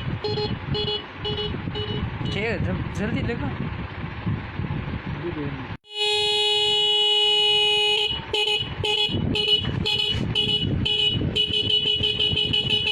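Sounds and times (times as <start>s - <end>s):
motorcycle horn: 0.0s - 2.4s, 5.8s - 12.9s.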